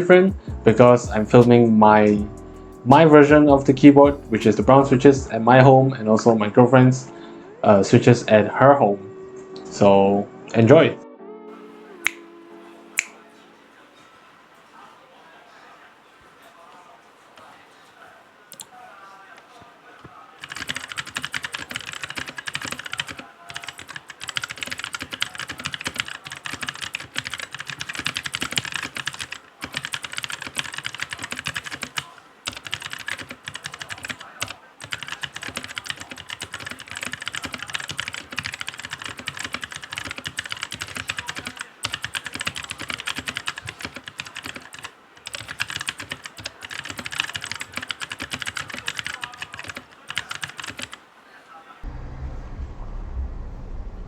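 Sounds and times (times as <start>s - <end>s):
mechanical keyboard typing: 20.4s - 51.0s.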